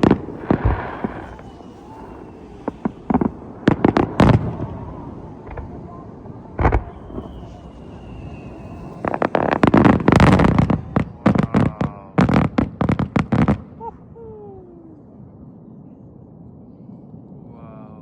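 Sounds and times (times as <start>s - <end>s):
faint falling whistle: 0.0s - 12.5s
crackling fireworks bangs: 0.0s - 14.1s
fireworks bangs: 0.0s - 14.1s.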